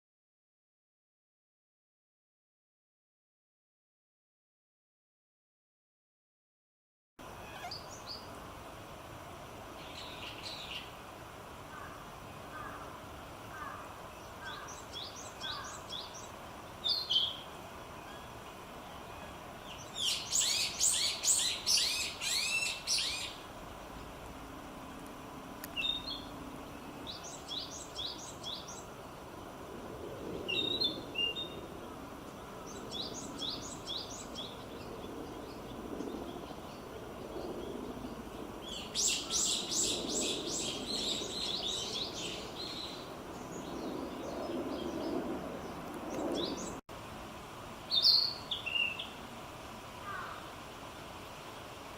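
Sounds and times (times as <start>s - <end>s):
bird singing high whistled notes: 19.8s - 23.4s.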